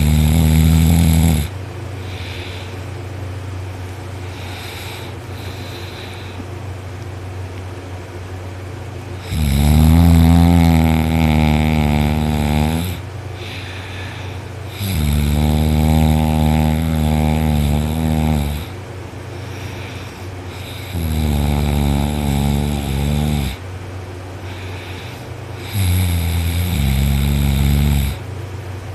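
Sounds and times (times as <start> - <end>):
man snoring loudly: 0.0 - 2.7, 4.3 - 6.4, 9.2 - 18.8, 19.8 - 23.6, 24.4 - 28.2.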